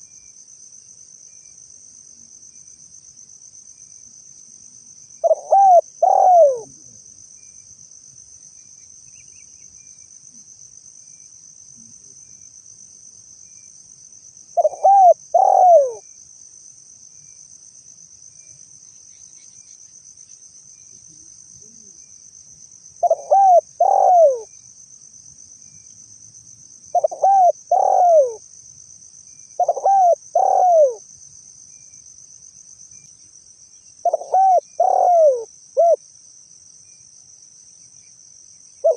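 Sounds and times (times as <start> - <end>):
high insect buzz: 0.0 - 38.9
dove cooing: 5.2 - 7.0, 14.6 - 16.0, 23.0 - 24.5, 26.9 - 28.4, 29.6 - 31.0, 34.0 - 36.0.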